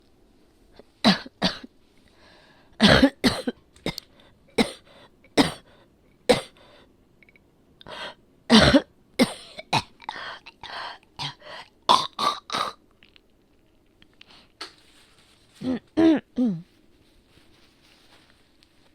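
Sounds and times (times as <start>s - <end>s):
woman coughing: 1.1s - 1.7s, 2.8s - 4.0s, 4.6s - 4.8s, 5.4s - 5.7s, 6.3s - 6.6s, 8.5s - 10.0s.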